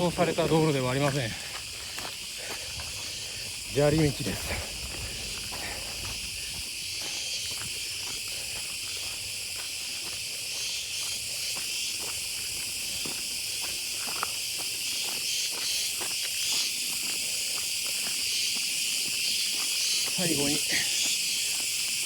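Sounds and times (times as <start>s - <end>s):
insects chorus: 0.0s - 22.0s
footsteps on gravel: 0.1s - 10.7s.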